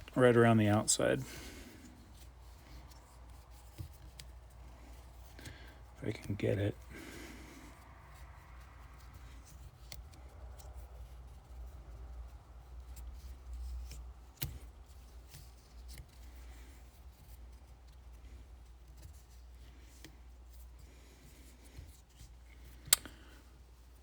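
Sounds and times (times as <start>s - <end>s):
sharp click: 22.9s - 23.1s.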